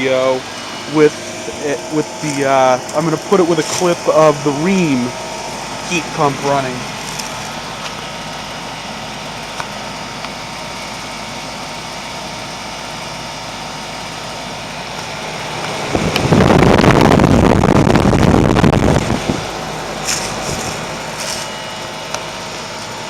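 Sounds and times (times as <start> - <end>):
heat pump humming: 0.0 - 23.0
loud rushing noise: 15.3 - 21.5.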